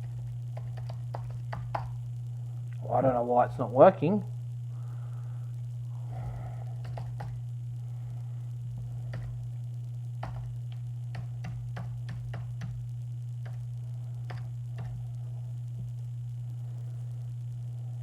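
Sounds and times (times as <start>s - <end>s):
low electrical hum: 0.0s - 18.0s
keyboard keystrokes: 0.6s - 1.9s, 6.8s - 7.4s, 9.1s - 9.4s, 10.2s - 12.8s.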